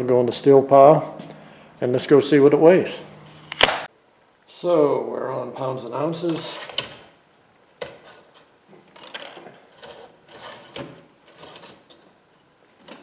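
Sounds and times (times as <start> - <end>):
sharp click: 3.5 - 3.9
wire rustling and scraping: 8.0 - 12.2.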